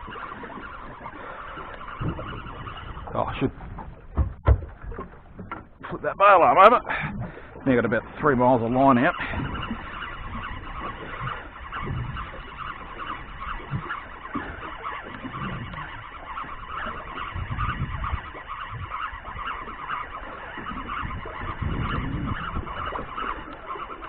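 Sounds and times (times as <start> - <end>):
fishing reel whirring: 0.0 - 3.5, 7.8 - 24.0
low rumbles: 2.0 - 9.5.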